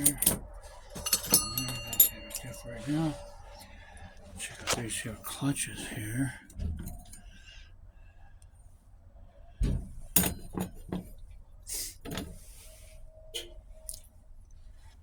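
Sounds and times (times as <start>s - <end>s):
metal parts clinking and knocking: 0.0s - 3.6s
metal rattling: 0.0s - 5.1s.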